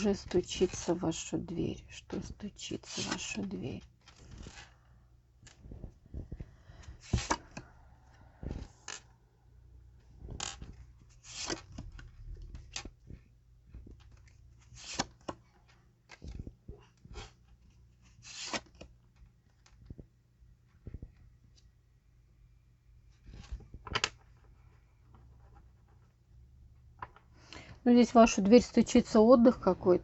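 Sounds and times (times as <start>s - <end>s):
cards sliding and tapping: 2.8s - 4.8s, 6.8s - 7.6s, 10.3s - 15.5s, 18.0s - 19.0s.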